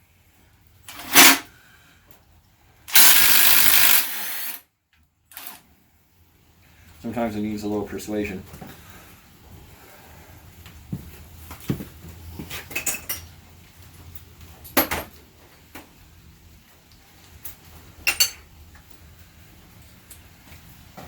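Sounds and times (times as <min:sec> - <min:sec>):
metal parts clinking: 0:00.9 - 0:01.4.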